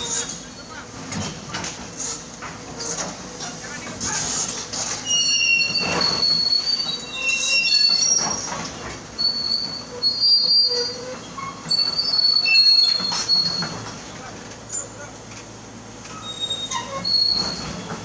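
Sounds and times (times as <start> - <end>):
excavator clatter: 0.0 - 18.0
high-pitched metallic squeals: 4.3 - 13.9, 16.1 - 18.0.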